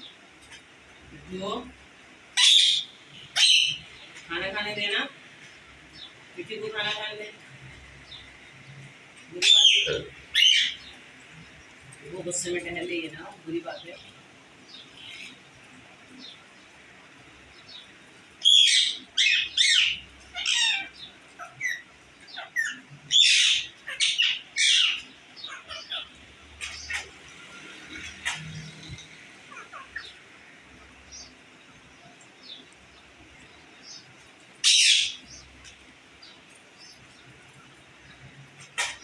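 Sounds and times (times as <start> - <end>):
parrot chirping softly: 0.0 - 39.0
parrot screeching: 2.4 - 3.8, 9.4 - 10.8, 18.4 - 27.1, 29.5 - 30.2, 34.6 - 35.2.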